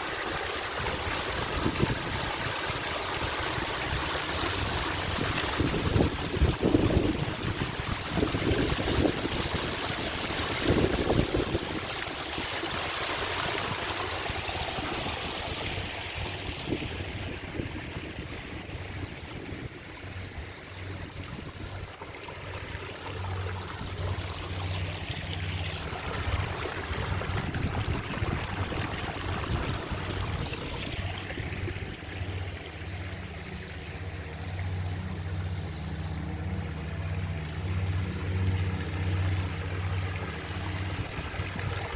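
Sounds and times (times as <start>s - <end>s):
wind buffeting the microphone: 0.2s - 24.7s, 25.8s - 32.4s, 40.6s - 41.9s
low steady hum: 13.9s - 41.9s.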